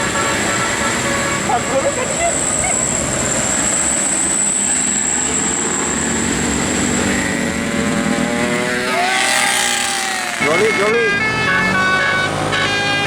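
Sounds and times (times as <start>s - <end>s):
musical air horn: 0.0s - 1.8s, 10.4s - 13.0s
bus engine running: 0.0s - 13.0s.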